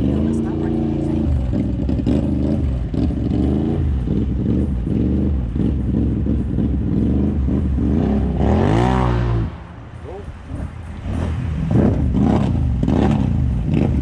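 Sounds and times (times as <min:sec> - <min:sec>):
off-road vehicle engine revving: 0:00.0 - 0:14.0.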